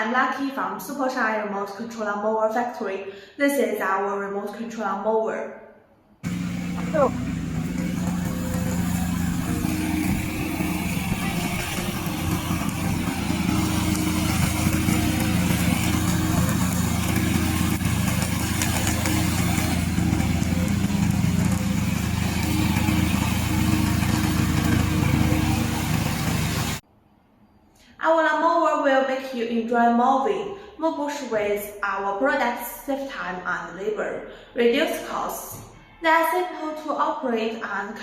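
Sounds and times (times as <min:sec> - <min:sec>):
lawn mower engine running: 0:06.2 - 0:26.8.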